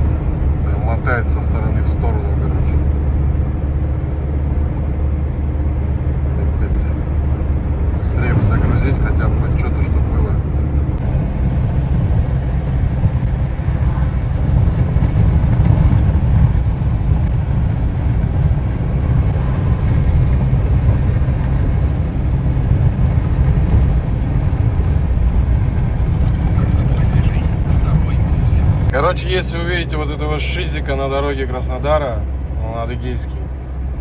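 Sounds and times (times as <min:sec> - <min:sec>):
wind buffeting: 0:00.0 - 0:30.9
truck engine rumble: 0:00.0 - 0:34.0.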